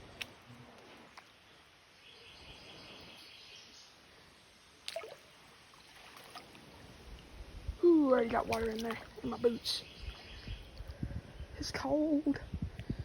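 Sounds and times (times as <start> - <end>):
creek water trickling: 0.0 - 13.0
boots splashing through water: 4.8 - 6.8, 8.1 - 10.5.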